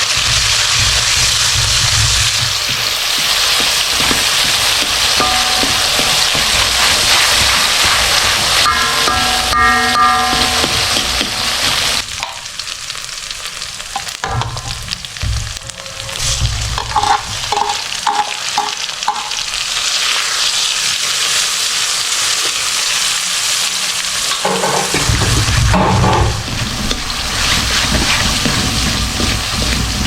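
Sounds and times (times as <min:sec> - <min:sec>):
food sizzling in a pan: 0:00.0 - 0:30.0
utensil knocking against pan: 0:02.6 - 0:12.4, 0:24.4 - 0:26.4.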